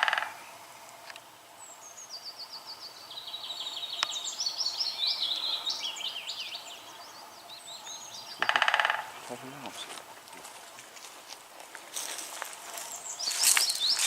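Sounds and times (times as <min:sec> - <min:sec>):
woodpecker drumming: 0:00.0 - 0:01.3, 0:07.8 - 0:11.0
small songbirds singing: 0:01.5 - 0:10.0, 0:12.7 - 0:14.0.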